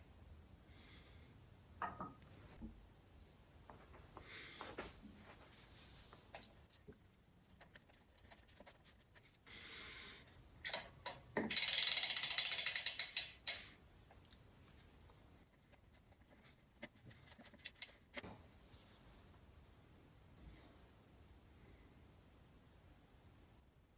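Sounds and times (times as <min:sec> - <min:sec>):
ratchet clicks: 0:11.4 - 0:13.8.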